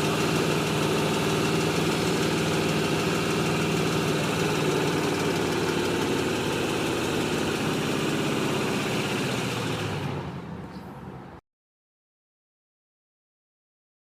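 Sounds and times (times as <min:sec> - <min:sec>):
rapid engine ticking: 0:00.0 - 0:10.4
car engine idling: 0:00.0 - 0:11.4.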